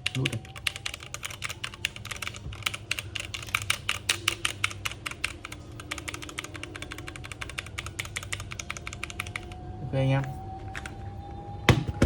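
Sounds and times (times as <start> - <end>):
mechanical keyboard typing: 0.0 - 9.6.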